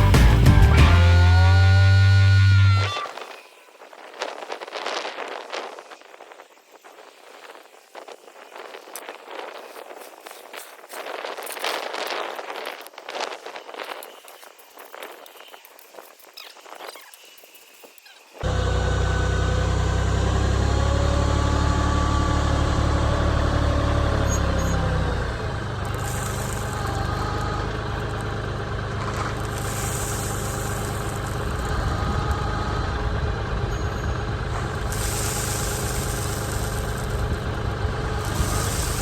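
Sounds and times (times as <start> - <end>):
tractor diesel engine running: 0.0 - 2.9, 18.4 - 39.0.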